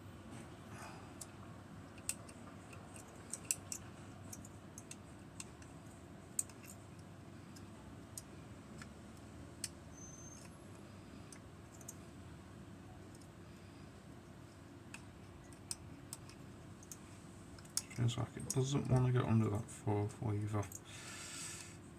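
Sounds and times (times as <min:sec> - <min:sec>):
faint steady hum: 0:00.0 - 0:21.9
metallic lock picking clicks: 0:01.9 - 0:05.7, 0:06.3 - 0:06.8, 0:09.6 - 0:10.5, 0:11.3 - 0:12.0.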